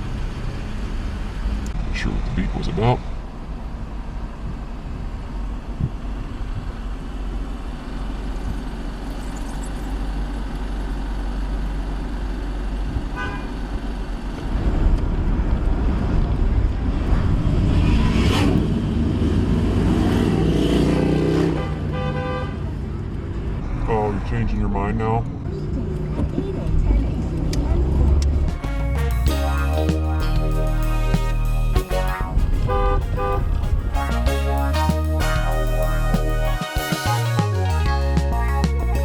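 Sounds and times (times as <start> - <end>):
car engine and road rumble: 0.0 - 39.0
car horn toot: 13.2 - 13.6, 20.9 - 22.7, 30.8 - 37.9.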